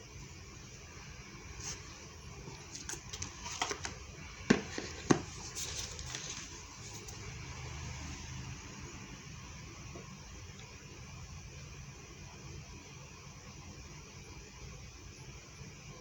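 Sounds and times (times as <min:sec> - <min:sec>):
packaging rustling: 0:01.6 - 0:07.2.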